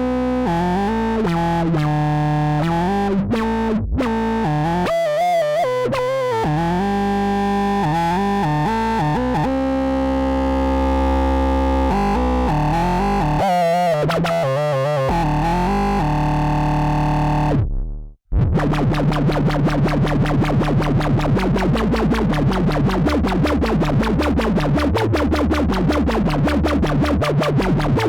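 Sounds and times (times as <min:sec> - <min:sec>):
analog synthesizer notes: 0:06.5 - 0:28.0.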